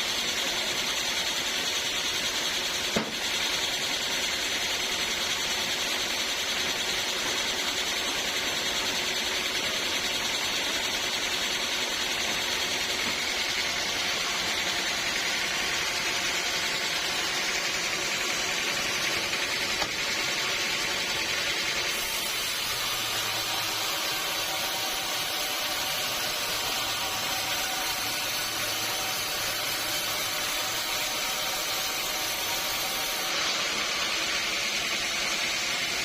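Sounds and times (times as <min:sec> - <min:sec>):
sawmill saw running: 0:00.0 - 0:36.0
sharp knock: 0:02.9 - 0:03.2.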